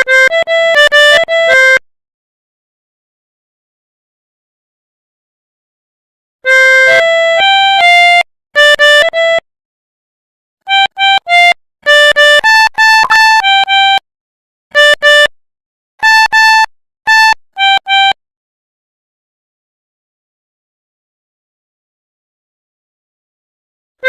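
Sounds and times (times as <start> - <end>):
melodica playing short notes: 0.0 - 1.8, 6.5 - 9.4, 10.7 - 14.0, 14.8 - 15.3, 16.0 - 18.2.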